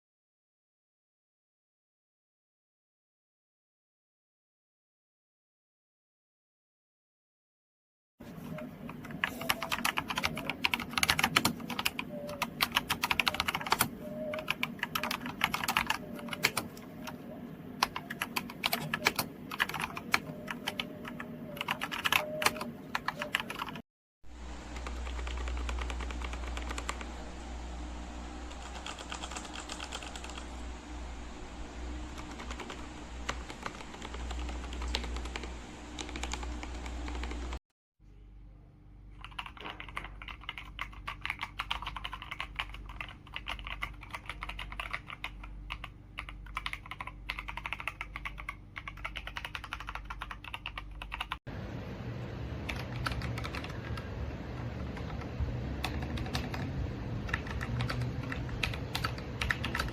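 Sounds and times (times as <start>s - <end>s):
rapid mechanical keyboard typing: 8.5s - 23.8s, 24.7s - 27.2s, 28.4s - 30.6s, 32.1s - 37.6s, 39.2s - 51.4s, 52.7s - 59.9s.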